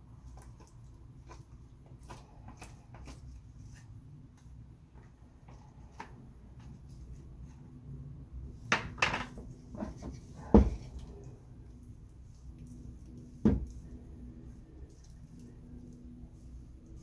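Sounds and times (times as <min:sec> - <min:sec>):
objects knocking and clattering: 0:08.7 - 0:11.0.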